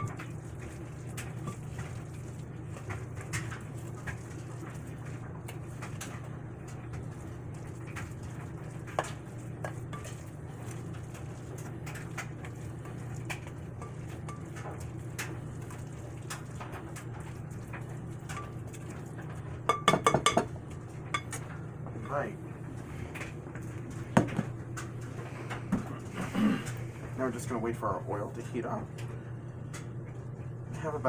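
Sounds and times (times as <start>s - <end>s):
utensil stirring batter in bowl: 0.0s - 24.4s
utensil clinking against bowl: 19.7s - 22.2s.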